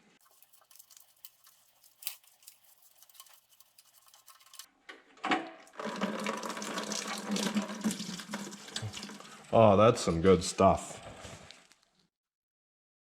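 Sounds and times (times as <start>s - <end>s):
oil pouring into a pail: 5.6s - 9.6s.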